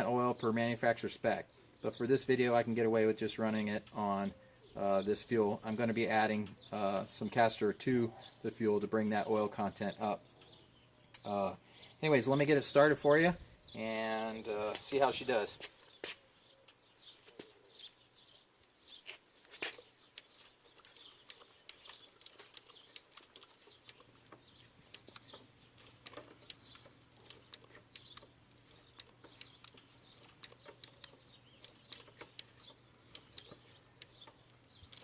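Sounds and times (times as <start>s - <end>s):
faint clicks and rustles: 14.4s - 35.0s
hand primer pump strokes: 18.9s - 35.0s.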